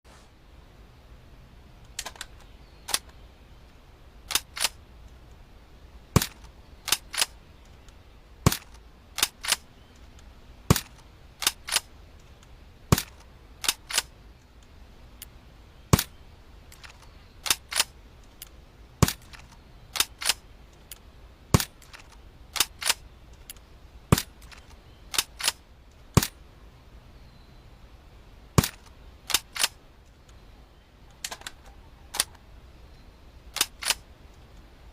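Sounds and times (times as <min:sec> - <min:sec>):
airsoft rifle clicks and snaps: 0:01.8 - 0:03.2, 0:04.3 - 0:04.8, 0:06.2 - 0:14.5, 0:16.7 - 0:21.0, 0:21.6 - 0:23.6, 0:24.2 - 0:26.4, 0:28.6 - 0:30.4, 0:31.1 - 0:32.4, 0:33.5 - 0:34.4.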